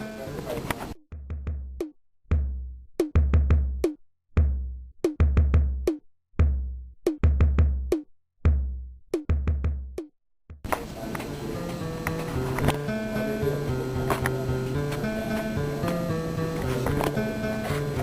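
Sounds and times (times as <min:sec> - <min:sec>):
drum beat: 0:01.1 - 0:10.8.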